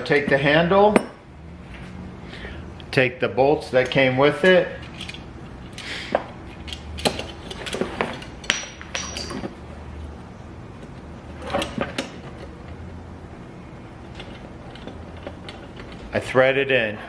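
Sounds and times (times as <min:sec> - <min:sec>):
metal bolts clinking: 0:08.4 - 0:09.6.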